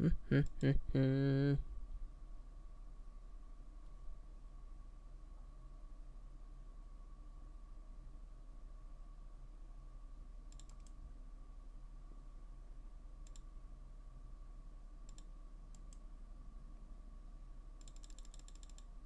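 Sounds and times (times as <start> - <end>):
faint electrical hum: 0.0 - 19.0
mouse and keyboard clicks: 17.8 - 18.9.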